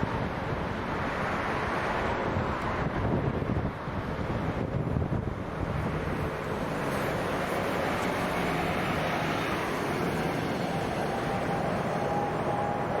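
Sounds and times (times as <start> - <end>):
jet engines rumbling: 5.3 - 13.0
thin steady whine: 7.2 - 13.0.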